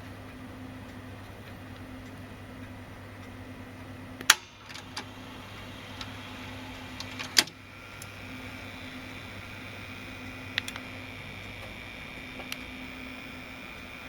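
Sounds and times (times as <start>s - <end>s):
tape mechanism hum and whine: 0.0s - 14.0s
tape deck clicks: 4.2s - 14.0s.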